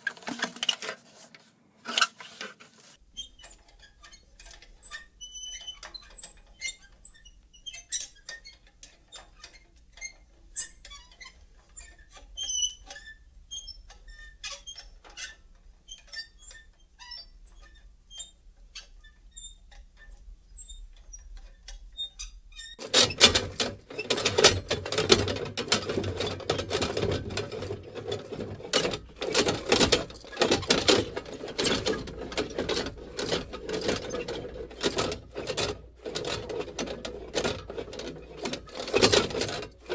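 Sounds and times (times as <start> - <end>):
metallic rattling and creaking: 21.2 - 39.9.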